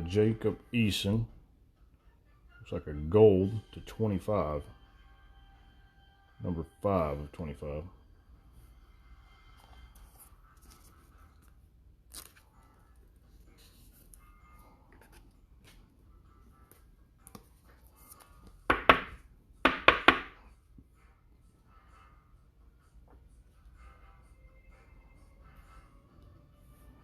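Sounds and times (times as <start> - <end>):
rustling of cards and packaging: 9.5 - 15.9, 16.6 - 18.7
foil wrapper ripping: 12.1 - 12.5.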